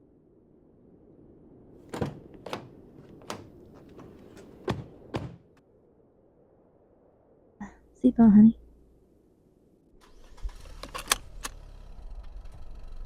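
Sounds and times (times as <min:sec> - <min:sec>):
car doors shutting: 0:01.9 - 0:05.4.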